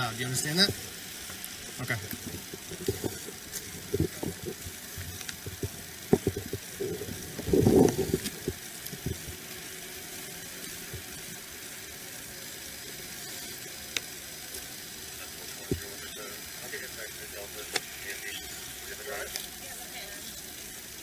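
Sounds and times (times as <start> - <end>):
steady background noise: 0.0 - 21.0
rustling close to microphone: 0.4 - 9.7.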